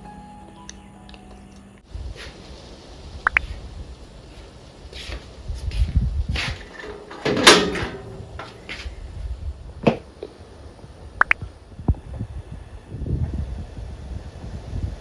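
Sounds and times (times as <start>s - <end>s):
handling knocks and scrapes: 2.2s - 2.4s, 4.2s - 9.0s, 9.8s - 10.1s.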